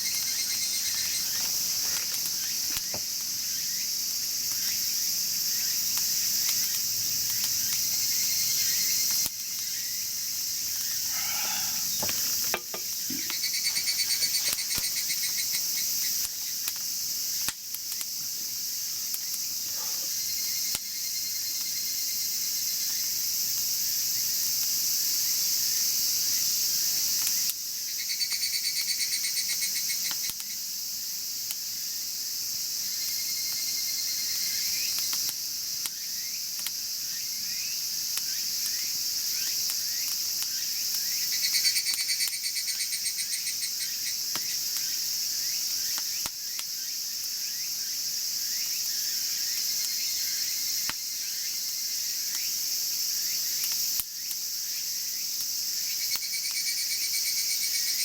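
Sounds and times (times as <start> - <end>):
night insects chirping: 0.0 - 58.0
wood fire crackling: 0.1 - 3.8, 9.1 - 20.2
pulsed cricket trill: 7.4 - 16.6.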